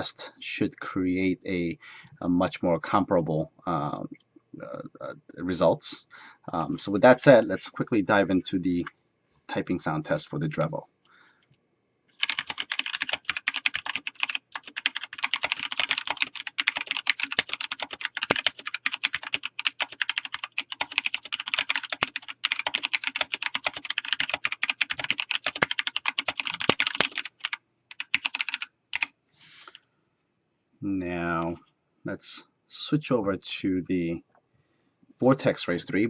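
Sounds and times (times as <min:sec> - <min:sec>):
fast mechanical keyboard typing: 0:12.2 - 0:29.1.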